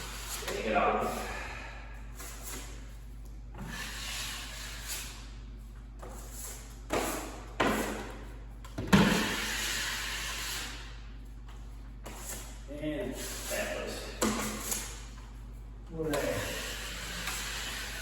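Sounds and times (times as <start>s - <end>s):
drywall knife scraping: 0.0s - 1.3s, 9.1s - 10.8s, 16.0s - 18.0s.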